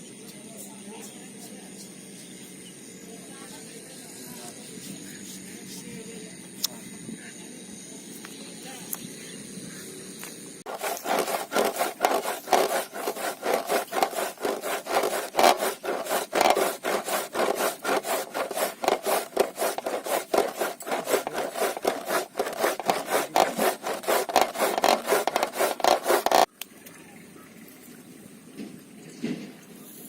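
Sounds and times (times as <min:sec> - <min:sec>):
grating by hand: 0:10.7 - 0:26.5.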